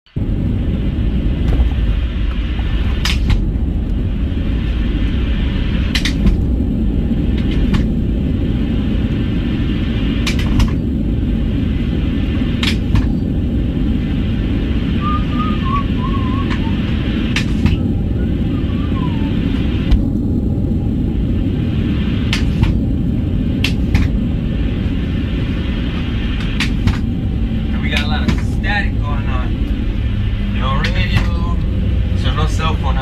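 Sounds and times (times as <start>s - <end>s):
airplane cabin rumble: 0.0s - 33.0s
speaker static crackles: 0.1s - 33.0s
warbling tone: 14.3s - 20.8s.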